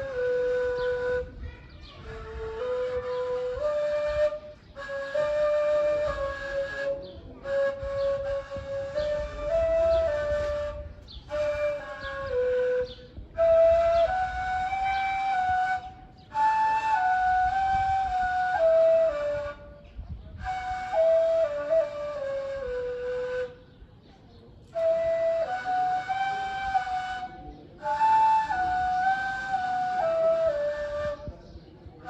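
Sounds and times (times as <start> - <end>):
end-blown reed flute melody: 0.0 - 23.6, 24.7 - 31.4.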